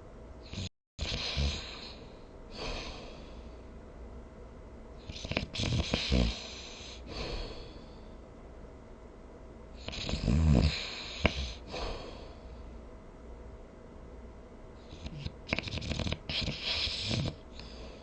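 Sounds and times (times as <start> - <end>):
person snoring: 0.5 - 3.4, 5.1 - 7.9, 9.8 - 12.4, 14.9 - 18.0
breathy exhale: 1.1 - 3.7, 5.9 - 8.2, 10.7 - 12.7.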